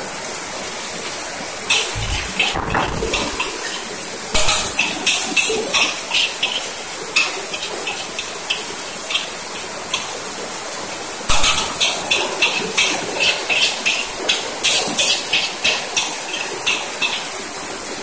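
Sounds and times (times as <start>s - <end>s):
food sizzling: 1.7s - 6.9s.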